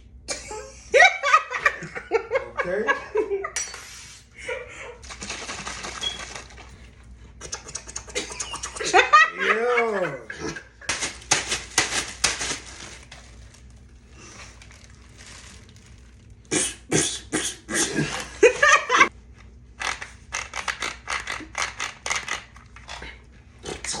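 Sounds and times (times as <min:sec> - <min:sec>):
person making mouth sounds: 0:07.4 - 0:09.0, 0:16.5 - 0:18.3.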